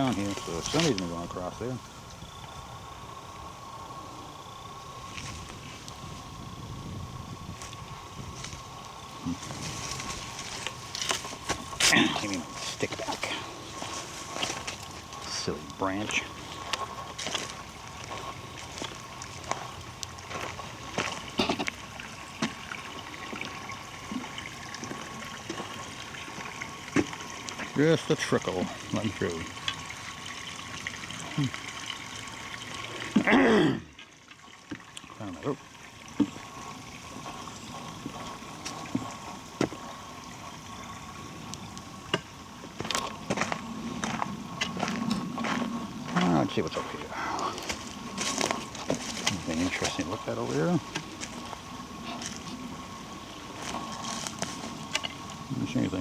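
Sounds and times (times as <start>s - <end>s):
small stream trickling: 0.0s - 56.0s.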